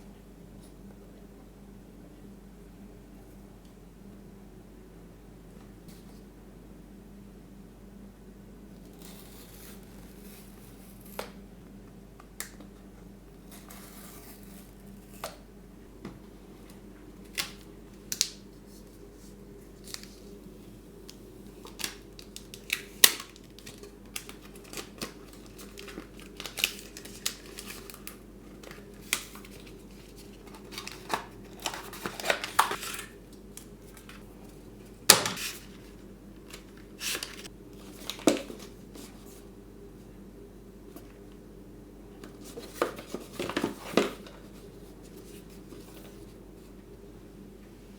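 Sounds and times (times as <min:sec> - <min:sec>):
packaging tearing and crinkling: 0:21.6 - 0:33.2, 0:36.5 - 0:38.7.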